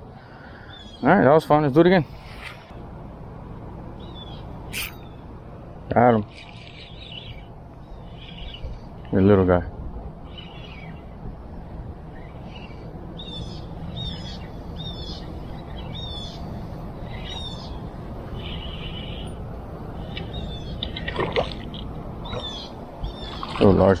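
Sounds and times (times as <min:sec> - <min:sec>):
low background rumble: 0:00.0 - 0:24.0
birds chirping: 0:04.0 - 0:05.4, 0:06.4 - 0:21.1, 0:21.7 - 0:23.6.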